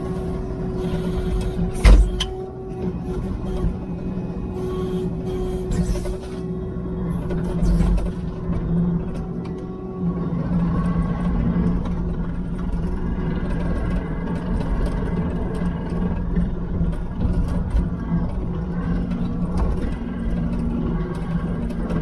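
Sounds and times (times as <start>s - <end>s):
diesel engine droning: 0.0s - 22.0s.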